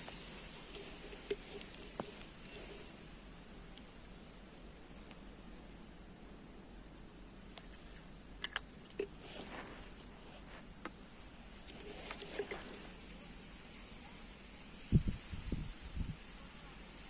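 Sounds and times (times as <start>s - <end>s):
light clicks and rustles: 0.0s - 3.0s, 7.5s - 14.2s
insects hissing: 0.0s - 6.1s.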